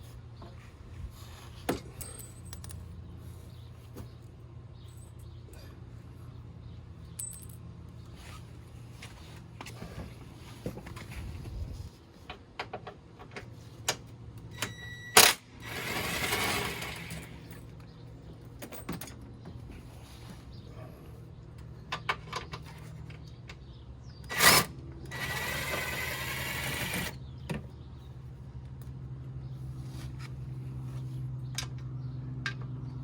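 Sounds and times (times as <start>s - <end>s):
impact wrench running: 15.2s - 17.5s, 24.3s - 27.2s.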